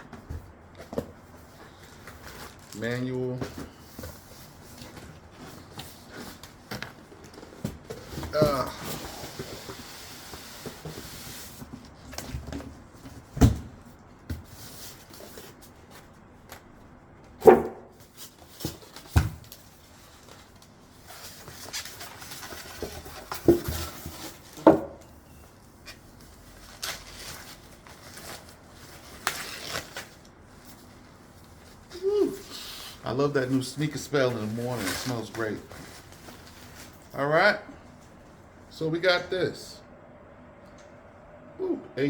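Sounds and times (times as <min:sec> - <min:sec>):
cardboard rustling and rubbing: 0:18.0 - 0:24.7, 0:33.6 - 0:37.1.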